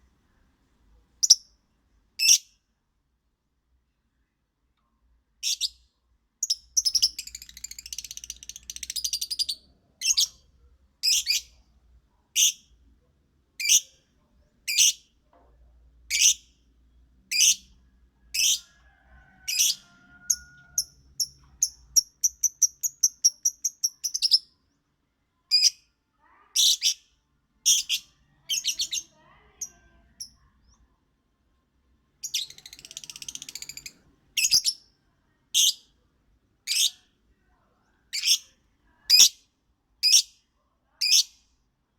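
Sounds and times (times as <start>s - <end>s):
lovebird chirping: 1.2s - 1.6s, 6.4s - 11.7s, 16.1s - 16.6s, 17.3s - 18.6s, 19.5s - 24.8s, 26.6s - 30.9s, 32.2s - 34.9s.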